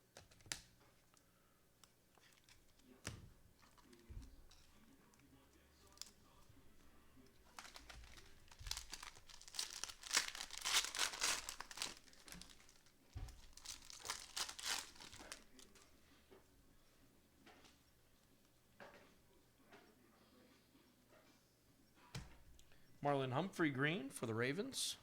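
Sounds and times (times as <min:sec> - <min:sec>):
card wrapper tearing and crinkling: 0:07.4 - 0:15.7.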